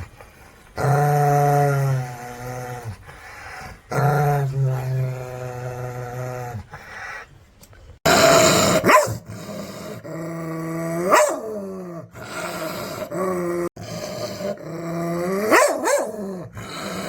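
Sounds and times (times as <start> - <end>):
dogs barking and snarling: 8.0 - 17.0
dogs growling: 8.0 - 17.0.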